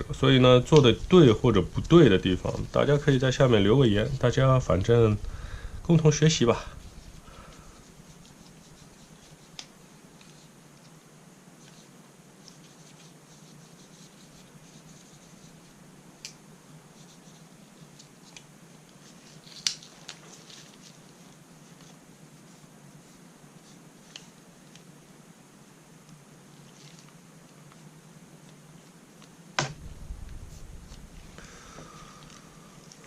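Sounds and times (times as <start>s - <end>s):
hands scratching and rubbing rifle parts: 0.7s - 4.2s, 6.7s - 11.0s, 11.6s - 15.7s, 17.0s - 24.9s, 26.6s - 27.9s.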